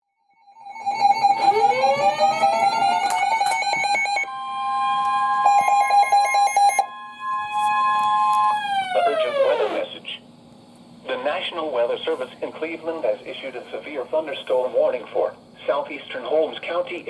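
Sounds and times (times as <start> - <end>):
electronic siren tone: 0.3 - 10.0
higher steady siren tone: 0.4 - 10.0.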